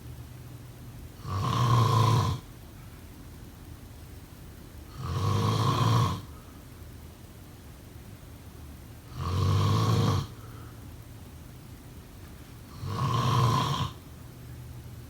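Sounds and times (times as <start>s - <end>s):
person snoring: 5.0s - 6.3s, 9.2s - 10.4s, 12.7s - 14.0s.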